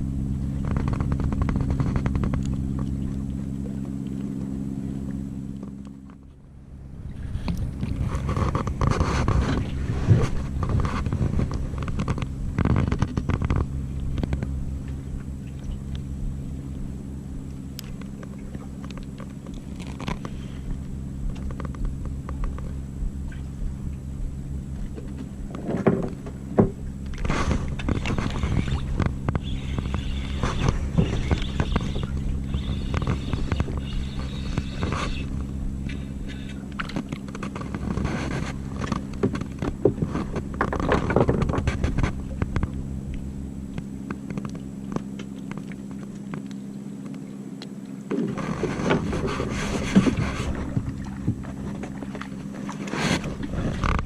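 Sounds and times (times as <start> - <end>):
engine running steadily: 0.0 - 54.0
knocks and scrapes: 0.6 - 2.9, 7.1 - 14.6, 17.9 - 23.4, 24.8 - 42.7, 48.1 - 54.0.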